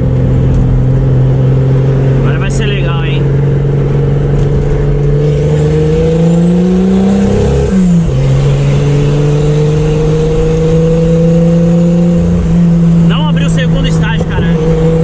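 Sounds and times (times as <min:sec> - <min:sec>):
car engine accelerating: 0:00.0 - 0:15.0
faint high turbo whistle: 0:06.8 - 0:10.6.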